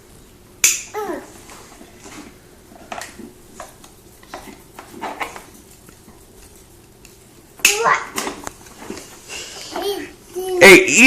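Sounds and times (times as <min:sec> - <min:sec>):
toddler vocal sound: 0:00.9 - 0:01.4.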